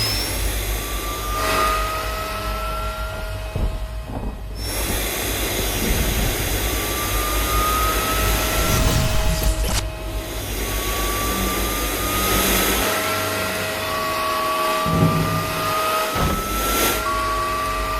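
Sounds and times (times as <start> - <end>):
steady high tones: 0.0 - 1.6
rising whine: 7.4 - 10.1.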